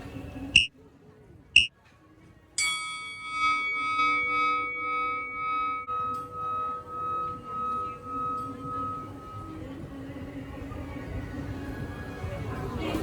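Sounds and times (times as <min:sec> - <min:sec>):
struck metallic bell tone: 0:02.6 - 0:11.5.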